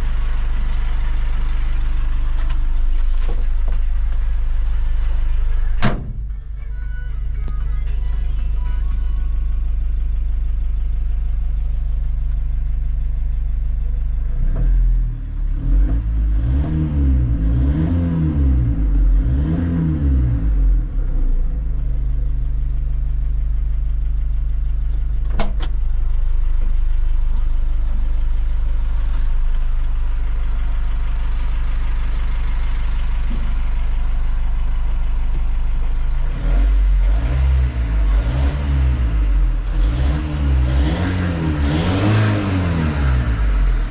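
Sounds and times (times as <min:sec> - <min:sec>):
diesel engine revving: 0:14.2 - 0:22.6, 0:27.2 - 0:43.9.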